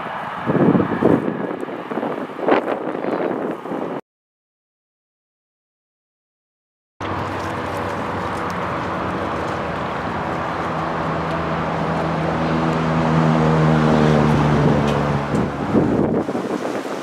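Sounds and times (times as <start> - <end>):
train diesel engine humming: 7.0 - 16.1.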